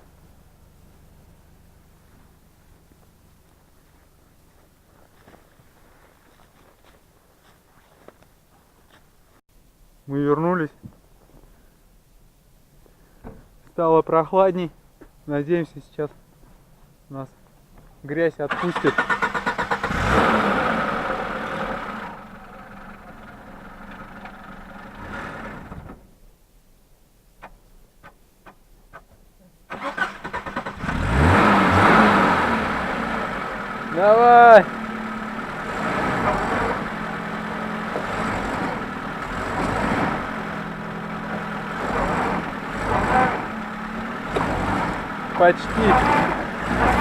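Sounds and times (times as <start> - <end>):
car engine running: 0.0 - 5.3, 19.0 - 25.8, 30.3 - 47.0.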